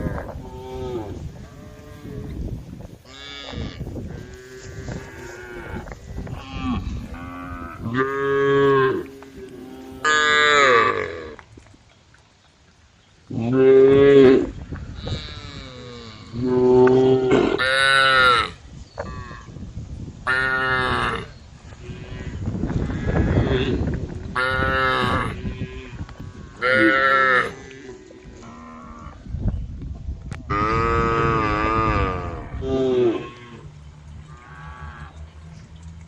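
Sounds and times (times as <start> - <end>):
cows mooing: 0.0 - 2.5, 3.1 - 11.4, 20.3 - 29.2, 30.5 - 35.5.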